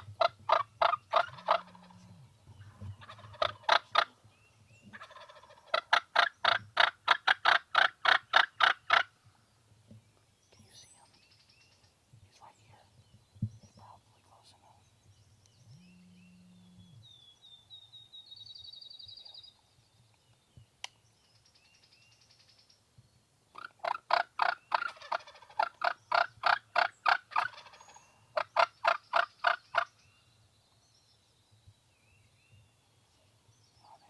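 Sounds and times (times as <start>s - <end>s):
turkey gobbling: 0.2s - 2.0s, 3.0s - 4.1s, 5.0s - 9.0s, 23.6s - 29.6s.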